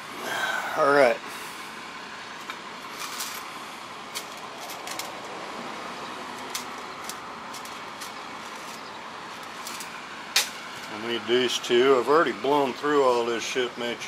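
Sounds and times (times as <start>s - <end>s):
workshop hiss: 0.0s - 14.0s
small metal parts clicking: 3.0s - 3.5s, 4.1s - 5.3s, 6.3s - 10.9s.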